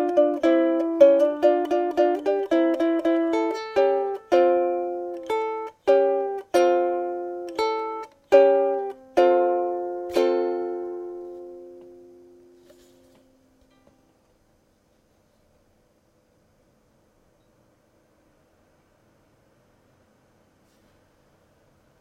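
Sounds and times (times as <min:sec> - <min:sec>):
ukulele playing: 0:00.0 - 0:14.3.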